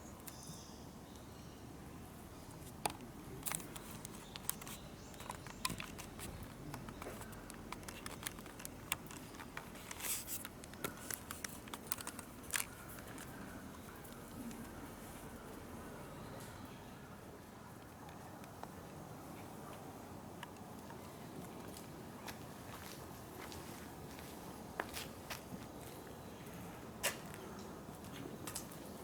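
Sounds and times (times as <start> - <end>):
light clicks and crackles: 2.4 - 15.7, 27.0 - 29.0.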